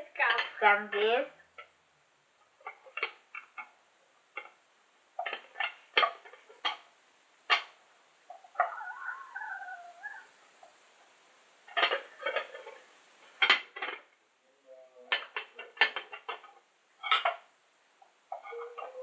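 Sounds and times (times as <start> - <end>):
dishes and cutlery clinking: 11.7 - 14.1, 15.1 - 17.4.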